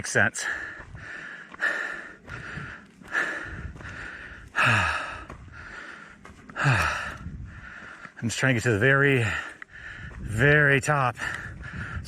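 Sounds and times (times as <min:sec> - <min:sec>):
person breathing hard: 0:00.4 - 0:08.2, 0:09.2 - 0:10.3, 0:11.2 - 0:12.0
voiced sigh: 0:00.5 - 0:07.8.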